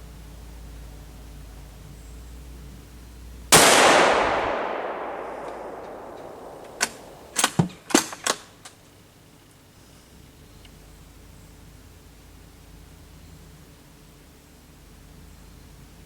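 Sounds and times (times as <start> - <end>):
rifle shot: 3.5 - 8.2
rifle bolt clicking: 5.4 - 8.4.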